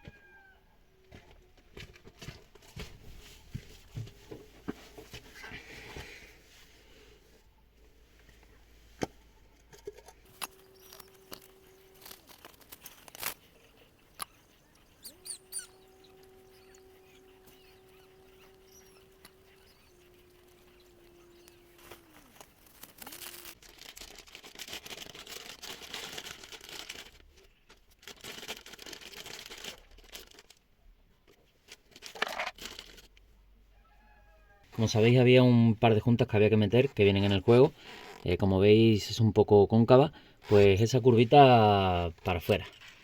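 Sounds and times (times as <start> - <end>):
rustling and rubbing: 1.8 - 30.6, 40.4 - 43.0.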